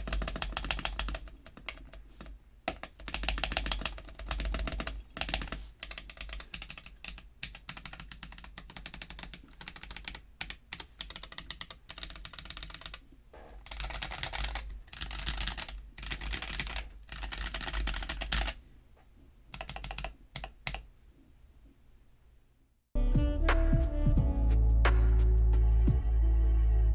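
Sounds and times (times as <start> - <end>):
mechanical keyboard typing: 0.0 - 13.0, 13.6 - 18.6, 19.5 - 20.9.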